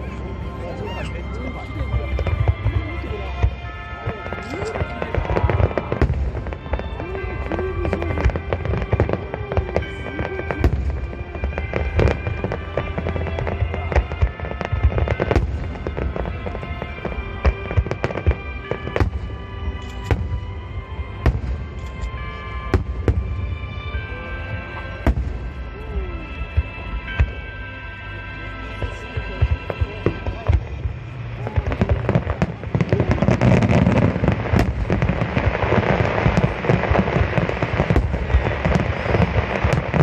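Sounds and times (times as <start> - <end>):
fireworks bursting: 0.0 - 27.9, 28.6 - 40.0
music playing: 0.0 - 40.0.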